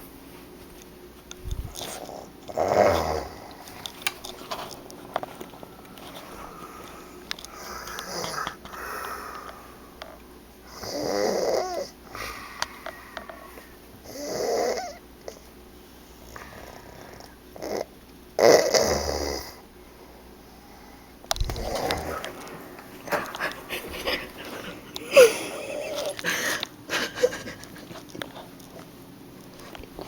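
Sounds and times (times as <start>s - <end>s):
man snoring: 2.5s - 3.5s, 7.5s - 9.5s, 10.7s - 12.5s, 14.0s - 15.0s, 18.4s - 19.6s
soft breaths: 3.4s - 10.2s, 19.8s - 28.8s.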